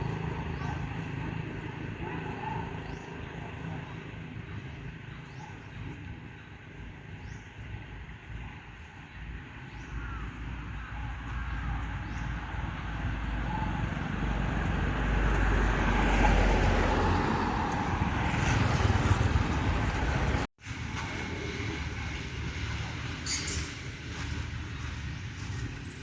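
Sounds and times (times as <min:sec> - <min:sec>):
motor vehicle rumble: 0:09.8 - 0:26.0.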